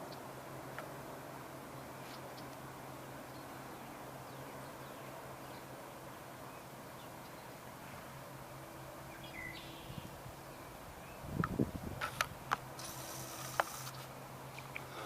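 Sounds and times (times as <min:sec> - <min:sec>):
faint bird chirps: 0:09.1 - 0:11.3.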